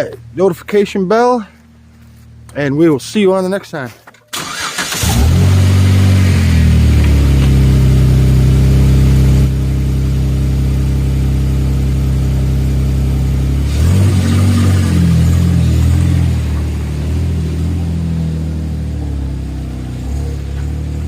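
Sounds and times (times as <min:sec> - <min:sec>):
car engine running: 0:04.4 - 0:21.0.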